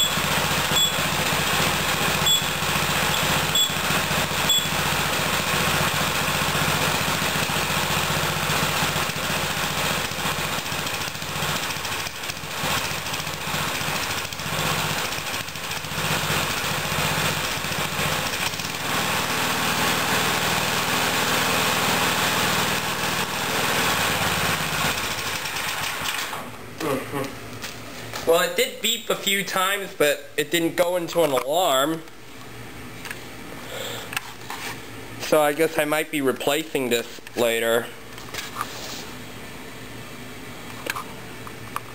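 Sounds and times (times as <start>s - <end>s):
lawn mower engine running: 0.0s - 26.6s.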